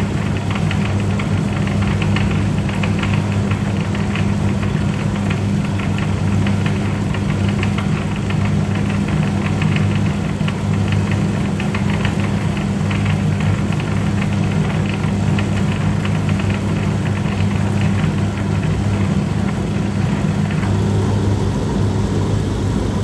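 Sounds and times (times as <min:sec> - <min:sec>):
motor humming: 0:19.4 - 0:23.0.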